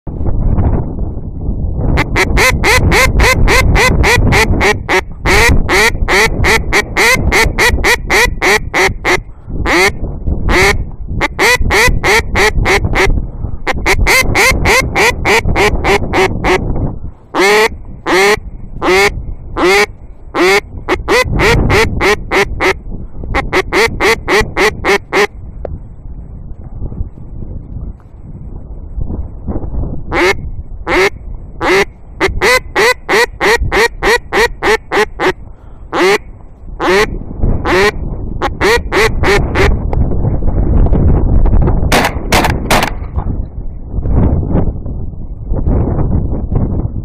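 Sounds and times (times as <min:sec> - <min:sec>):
wind rumbling on microphone: 0:00.0 - 0:47.0
duck quacking: 0:02.0 - 0:13.1, 0:13.7 - 0:16.6, 0:17.3 - 0:25.4, 0:30.1 - 0:39.7.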